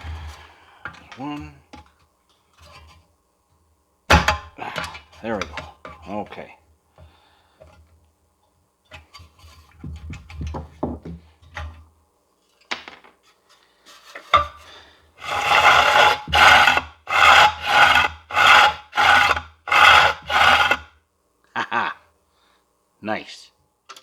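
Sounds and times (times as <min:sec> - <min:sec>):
pull cord rasping: 0:15.2 - 0:20.8.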